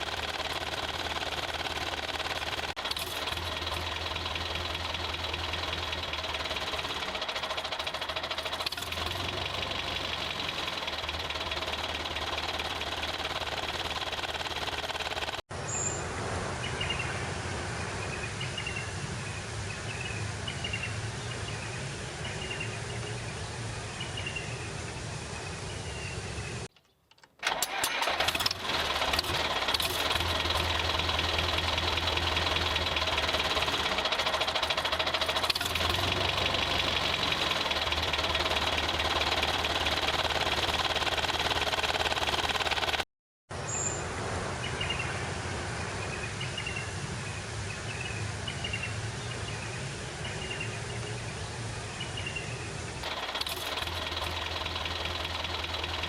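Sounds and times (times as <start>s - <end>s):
motor humming: 0.0s - 15.4s, 28.0s - 43.0s.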